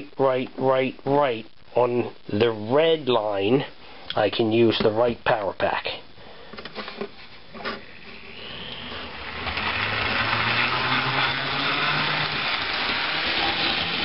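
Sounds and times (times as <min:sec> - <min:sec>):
model train motor whining: 0:07.9 - 0:14.0.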